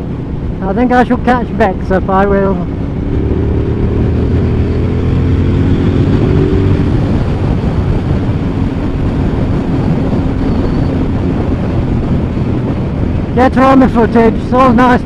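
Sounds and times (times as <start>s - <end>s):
wind noise rushing: 0.0s - 15.0s
motorcycle engine running: 1.9s - 13.4s.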